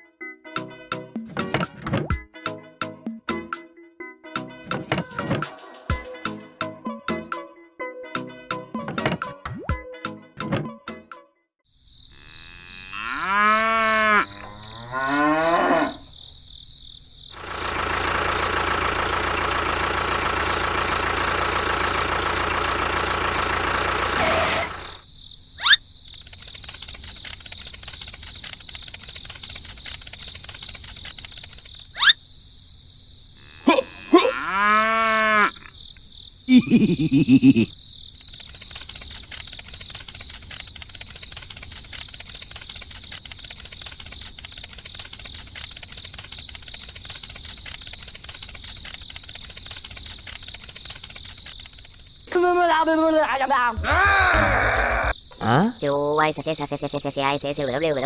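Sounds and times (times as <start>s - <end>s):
drawn-out animal calls: 23.3s - 25.0s, 53.8s - 55.2s
sharp clicks: 26.0s - 32.0s, 38.1s - 52.3s.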